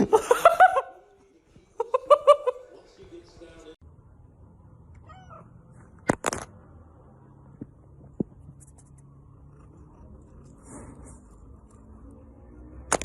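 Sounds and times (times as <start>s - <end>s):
cat meowing: 5.0s - 5.5s.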